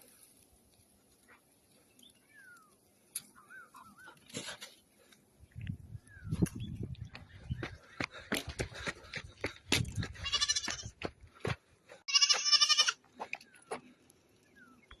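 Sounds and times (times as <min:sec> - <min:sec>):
goat bleating: 0:10.2 - 0:10.9, 0:12.1 - 0:13.0.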